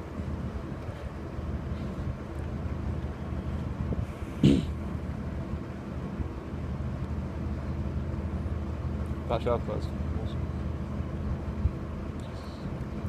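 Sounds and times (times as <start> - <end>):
wind buffeting microphone: 0.0 - 5.7
steady low hum: 0.0 - 13.0.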